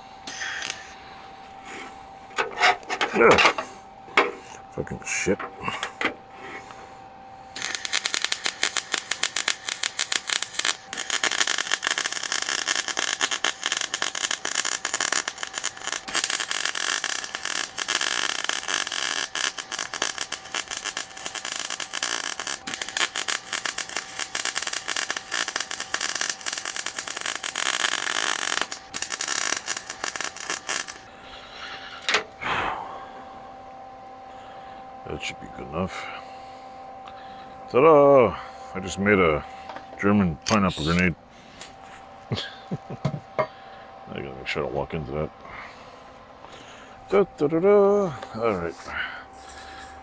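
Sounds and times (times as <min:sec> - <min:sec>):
arc welder crackling: 0:00.0 - 0:01.0, 0:07.4 - 0:31.1.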